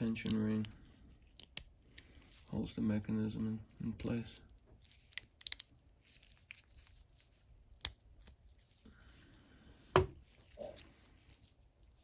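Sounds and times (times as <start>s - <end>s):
small sharp metal clicks: 5.2s - 5.7s.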